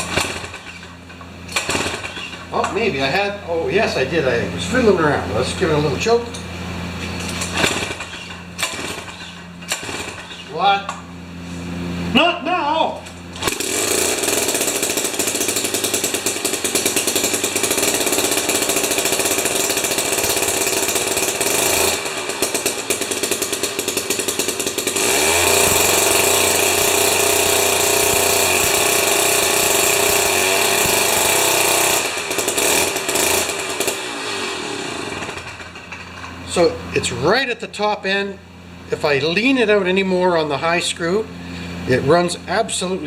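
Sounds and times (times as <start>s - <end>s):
two-stroke engine running at high revs: 0.0s - 2.8s, 6.7s - 12.2s, 13.1s - 37.2s, 41.3s - 42.2s.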